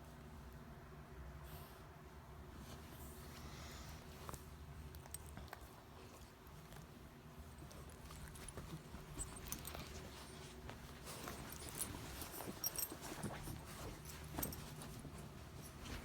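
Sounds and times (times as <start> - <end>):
low steady hum: 0.0 - 16.0
scattered clicks and rustles: 4.1 - 16.0.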